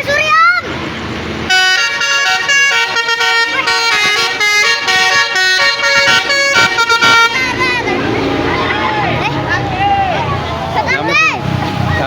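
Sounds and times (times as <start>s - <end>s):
musical bus horn playing tune: 1.5s - 8.5s.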